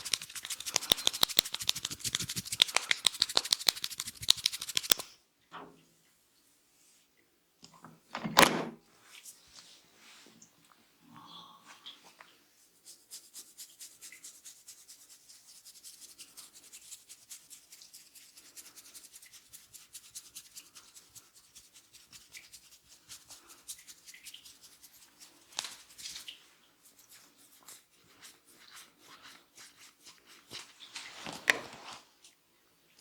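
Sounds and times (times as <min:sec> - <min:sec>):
hands rubbing scalp and hair: 0:00.0 - 0:05.1, 0:12.8 - 0:32.0.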